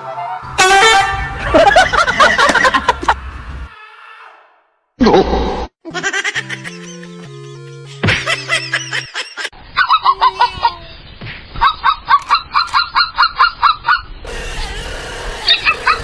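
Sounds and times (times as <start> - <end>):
music: 6.4 - 9.1.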